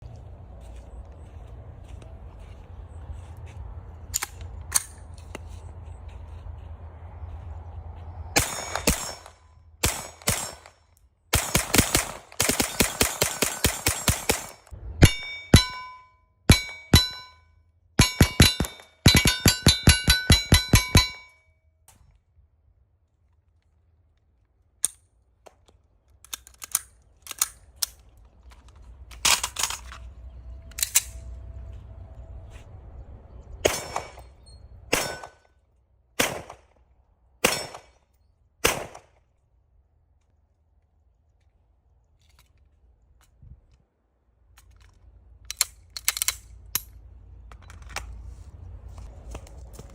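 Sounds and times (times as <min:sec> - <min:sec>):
small-calibre gunshots: 0:08.4 - 0:17.4, 0:18.0 - 0:21.3, 0:33.6 - 0:35.5, 0:36.1 - 0:39.4
metallic ringing: 0:15.0 - 0:21.5.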